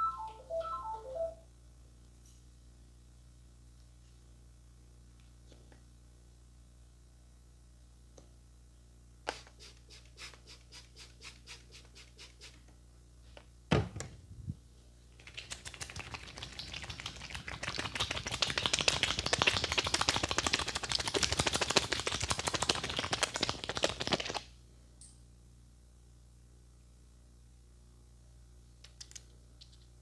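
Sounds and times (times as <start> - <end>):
fast patter of quick taps: 15.2 - 24.5.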